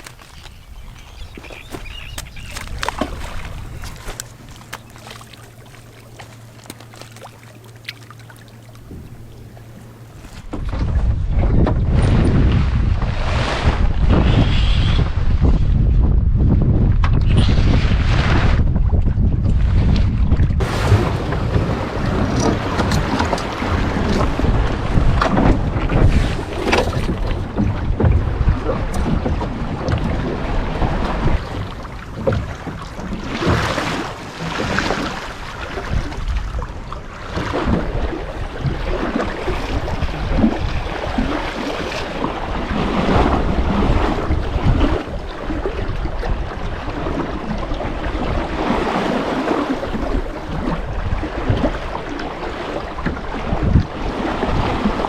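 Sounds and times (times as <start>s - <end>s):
wind buffeting microphone: 0.0s - 6.5s, 8.7s - 55.0s
splashing water: 0.0s - 10.3s.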